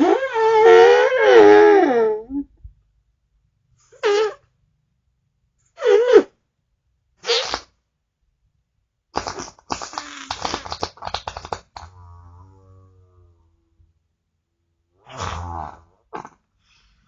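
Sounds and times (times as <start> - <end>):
farts: 4.0 - 4.4, 7.2 - 7.7, 9.2 - 13.3, 15.0 - 16.5.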